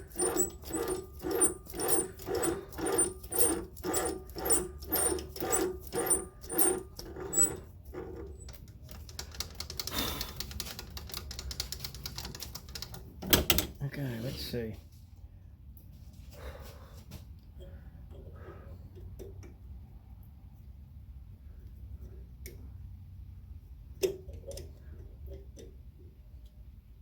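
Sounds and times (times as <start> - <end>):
steady lathe hum: 0.0 - 7.7
metal lathe turning with even pulse: 0.0 - 8.7.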